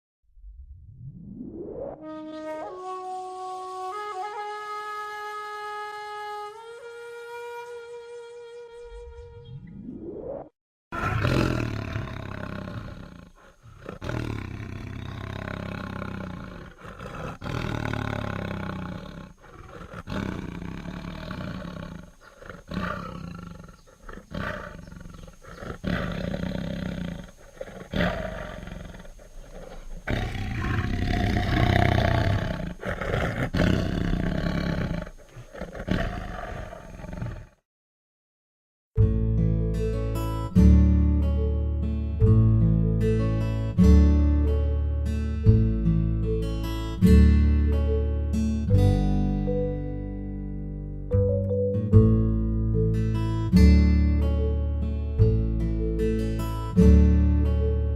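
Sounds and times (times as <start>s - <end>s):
tiger roaring: 10.9s - 37.6s.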